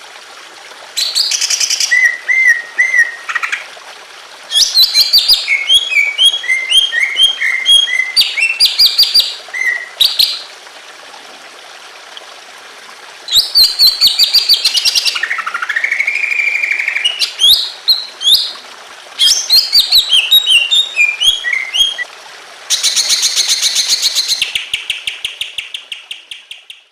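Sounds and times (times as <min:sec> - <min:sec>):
trickle of water: 0:00.0 - 0:26.9
bird singing chirped phrases: 0:04.5 - 0:10.4, 0:13.3 - 0:18.6, 0:19.2 - 0:22.0.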